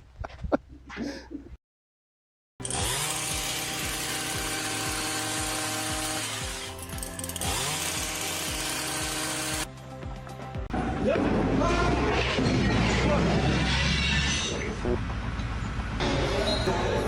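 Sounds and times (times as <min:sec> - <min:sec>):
loud power tool running: 0:02.6 - 0:09.7
background music: 0:02.6 - 0:13.6.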